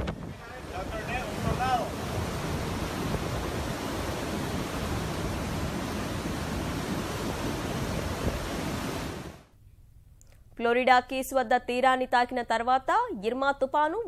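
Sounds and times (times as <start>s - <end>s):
driving rain: 0.0s - 9.4s
hurricane wind: 0.0s - 9.5s.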